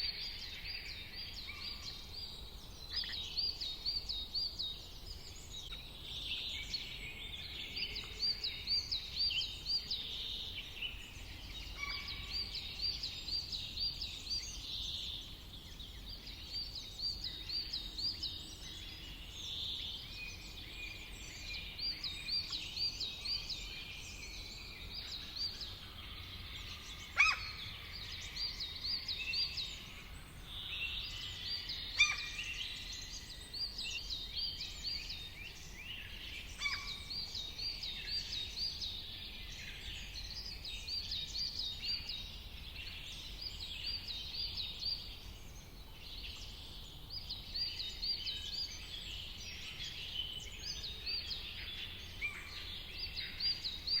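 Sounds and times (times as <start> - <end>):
songbirds singing: 0.0 - 54.0
sharp loud bird calls: 26.9 - 28.4.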